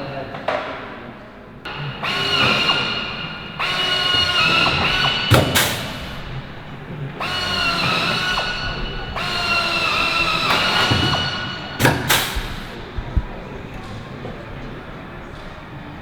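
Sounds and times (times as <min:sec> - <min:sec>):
sharp knocks: 0:01.7 - 0:13.3
pneumatic air drill whining: 0:01.7 - 0:14.8.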